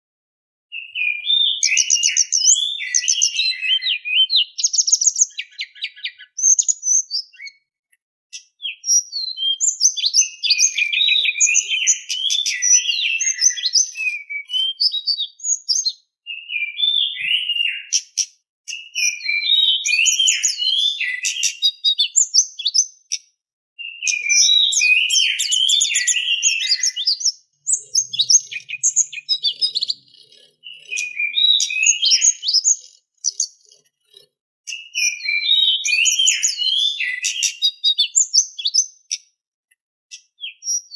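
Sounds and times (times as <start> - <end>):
bird chirping and warbling: 0.7 - 7.7, 8.3 - 39.3, 40.1 - 40.9.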